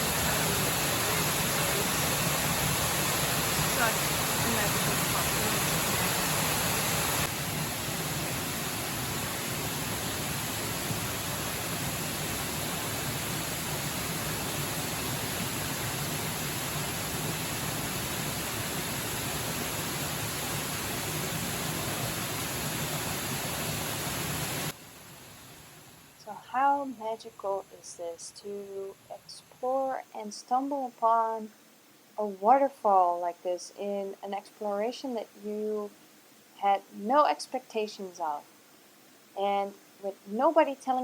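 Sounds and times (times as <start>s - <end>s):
waterfall rushing: 0.0s - 24.7s.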